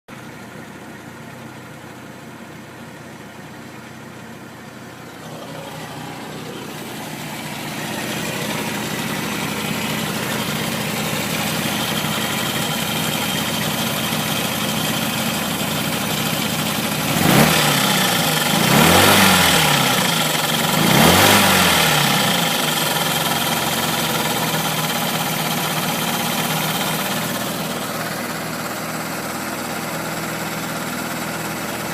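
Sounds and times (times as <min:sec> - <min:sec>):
car engine idling with ticking: 0:00.1 - 0:31.9
engine revving: 0:05.0 - 0:28.3.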